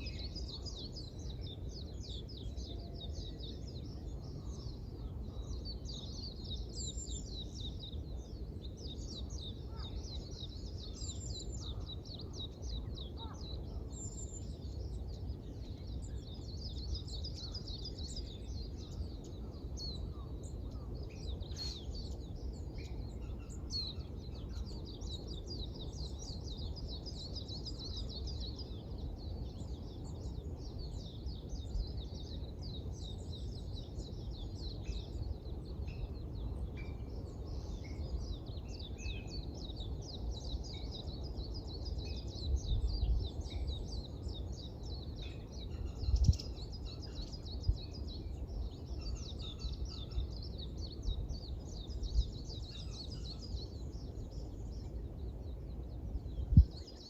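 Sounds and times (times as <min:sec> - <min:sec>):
songbirds twittering: 0:00.0 - 0:57.0.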